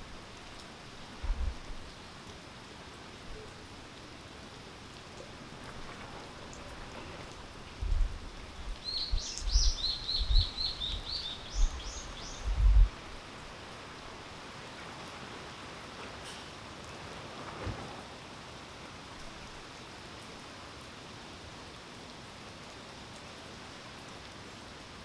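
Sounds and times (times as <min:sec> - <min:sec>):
steady rain: 0:00.0 - 0:25.0
bird chirping: 0:08.8 - 0:12.8.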